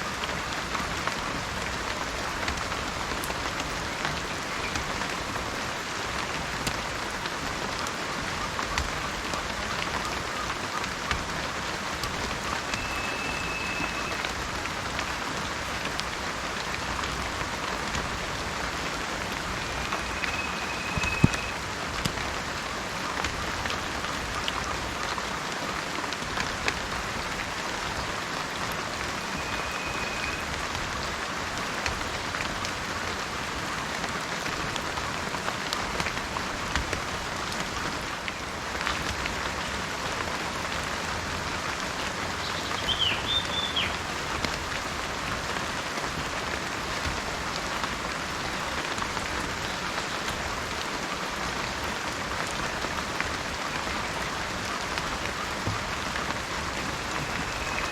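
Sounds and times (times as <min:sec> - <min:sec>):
steady rain hissing: 0:00.0 - 0:57.9
raindrops ticking: 0:00.1 - 0:57.9
short high whistles: 0:12.8 - 0:14.1, 0:19.7 - 0:21.6.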